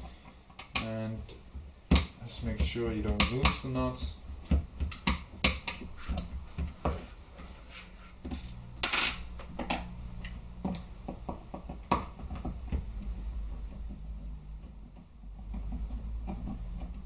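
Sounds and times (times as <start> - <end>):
small metal parts clinking: 8.8 - 9.3.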